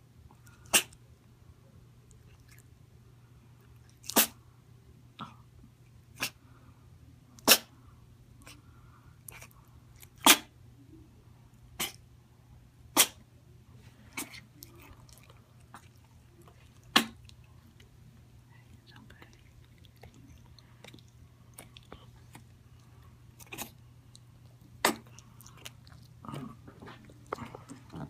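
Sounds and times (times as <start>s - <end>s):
pet sneezing: 0.5s - 1.0s, 4.0s - 4.4s, 6.1s - 6.4s, 7.4s - 7.7s, 10.2s - 10.5s, 11.8s - 12.0s, 12.9s - 13.2s, 14.1s - 14.5s, 16.9s - 17.2s, 24.8s - 25.2s.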